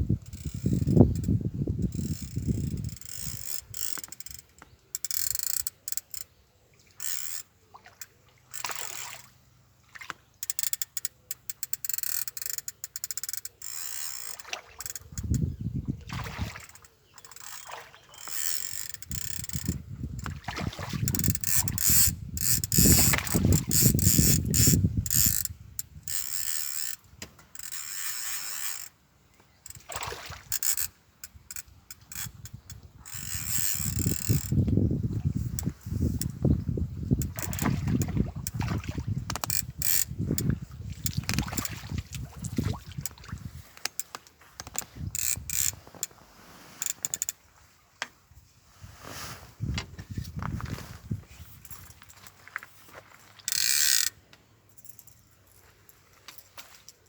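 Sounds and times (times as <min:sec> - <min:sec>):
fishing reel ratchet clicking: 0:00.2 - 0:06.4, 0:07.0 - 0:09.2, 0:10.4 - 0:15.5, 0:16.7 - 0:20.3, 0:21.0 - 0:29.0, 0:29.6 - 0:34.8, 0:37.1 - 0:38.6, 0:39.3 - 0:43.2, 0:43.8 - 0:46.1, 0:46.8 - 0:47.4, 0:53.5 - 0:54.2.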